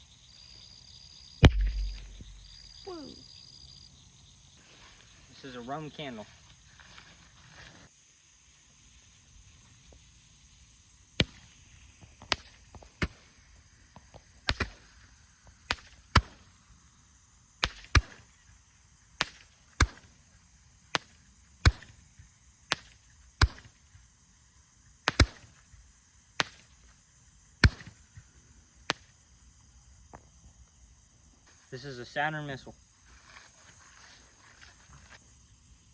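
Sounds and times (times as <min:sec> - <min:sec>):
roman candle pops: 0:01.4 - 0:02.9, 0:12.2 - 0:13.3, 0:14.0 - 0:15.0, 0:17.6 - 0:18.3, 0:19.2 - 0:20.1, 0:21.0 - 0:21.9, 0:22.7 - 0:23.8, 0:25.1 - 0:25.6, 0:27.6 - 0:28.0.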